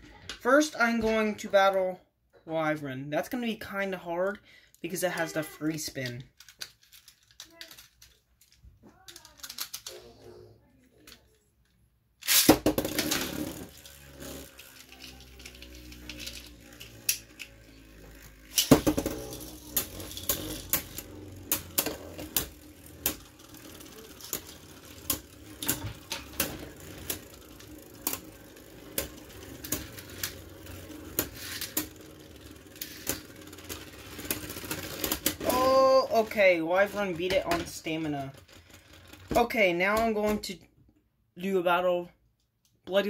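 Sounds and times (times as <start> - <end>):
spinning tops launched with a rip: 12.2 - 35.5
spinning tops clacking together: 12.2 - 35.6
spinning tops whirring: 12.2 - 40.1.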